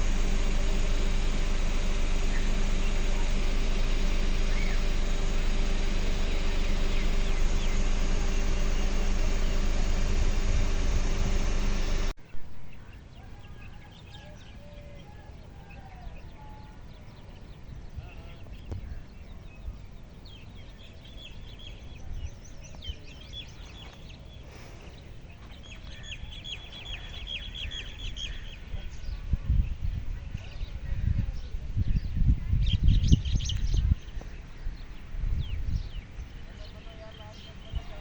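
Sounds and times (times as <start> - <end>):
bird calls: 0.0 - 12.0, 12.6 - 29.3
engine running: 0.0 - 12.8.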